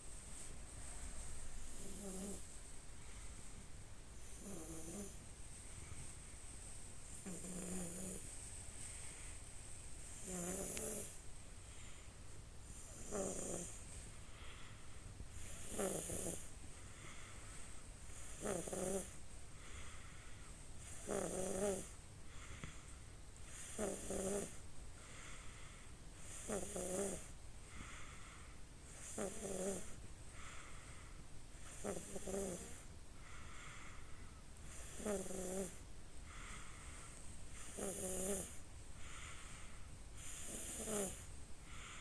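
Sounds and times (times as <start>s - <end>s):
soft breaths: 0.0s - 42.0s
person snoring: 1.7s - 2.4s, 4.4s - 5.2s, 7.2s - 8.2s, 10.2s - 11.2s, 12.8s - 13.8s, 15.4s - 16.5s, 18.2s - 19.1s, 20.8s - 21.9s, 23.6s - 24.6s, 31.7s - 32.8s, 34.7s - 35.8s, 37.6s - 39.3s, 40.2s - 42.0s.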